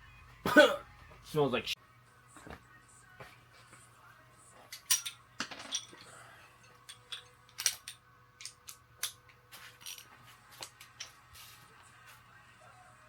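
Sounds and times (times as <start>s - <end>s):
metallic clinks of tools and bolts: 4.7s - 11.2s.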